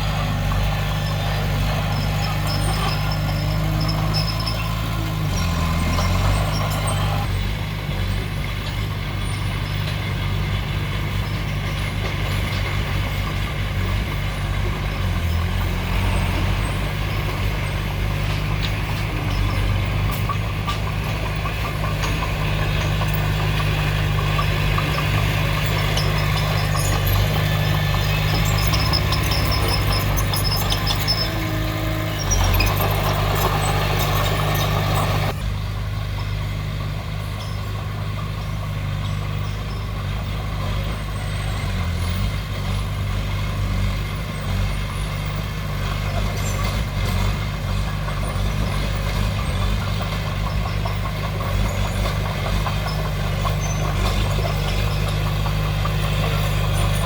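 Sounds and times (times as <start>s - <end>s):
metallic squealing: 0.0s - 8.3s, 9.2s - 35.4s, 46.3s - 57.0s
diesel machinery engine running: 0.0s - 57.0s
metallic clanking: 8.7s - 35.5s.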